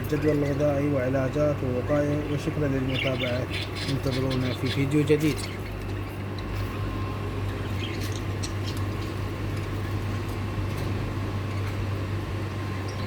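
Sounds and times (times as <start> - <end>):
birds chirping and squeaking: 0.0 - 6.6, 7.5 - 10.0
steady low hum: 0.0 - 13.0.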